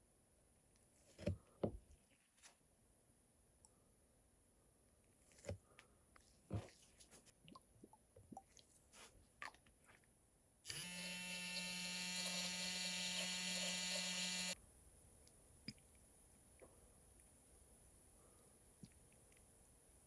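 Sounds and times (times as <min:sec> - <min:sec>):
small electric motor running: 0:10.7 - 0:14.6.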